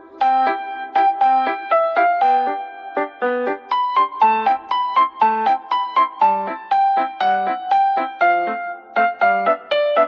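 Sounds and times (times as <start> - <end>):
piano melody: 0.0 - 10.0.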